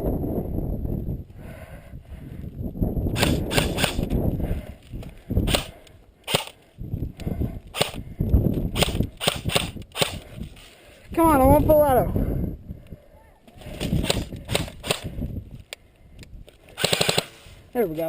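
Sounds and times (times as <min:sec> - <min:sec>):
wind buffeting microphone: 0:00.0 - 0:18.0
airsoft gun shots: 0:03.2 - 0:04.0, 0:08.8 - 0:10.2, 0:16.8 - 0:17.3.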